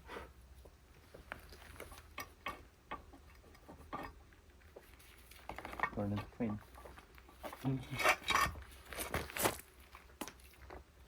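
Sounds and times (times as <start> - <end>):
metal tools clicking and tapping: 1.8 - 4.3, 5.4 - 8.6.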